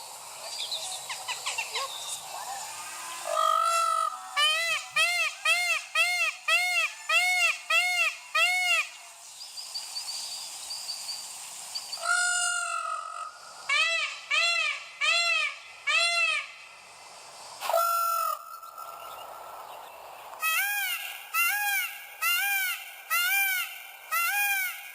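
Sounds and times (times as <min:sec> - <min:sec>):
peacock calling: 0:02.8 - 0:09.0, 0:12.0 - 0:16.6, 0:20.4 - 0:24.9.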